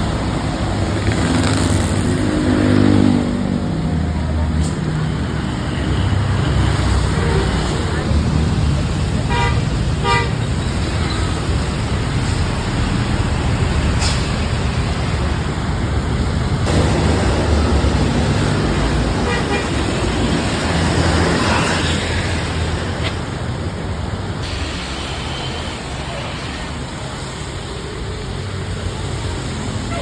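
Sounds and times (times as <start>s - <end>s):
bus engines rumbling: 0.0s - 30.0s
road traffic: 0.0s - 30.0s
bus air horn toots: 9.3s - 10.4s, 19.2s - 19.9s.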